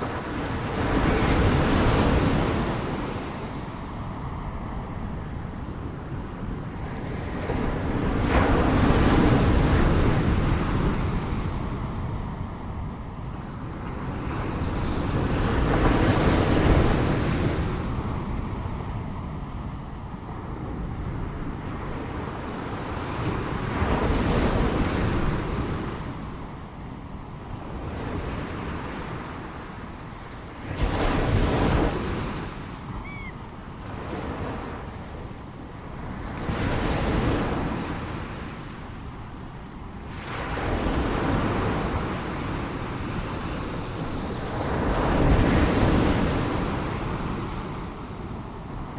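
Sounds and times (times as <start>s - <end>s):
ocean waves breaking: 0.0s - 39.1s.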